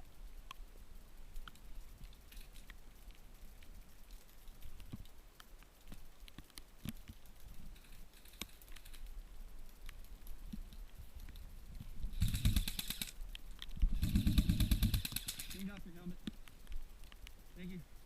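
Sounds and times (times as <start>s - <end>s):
airsoft gun full-auto bursts: 12.1s - 13.2s, 14.0s - 15.7s.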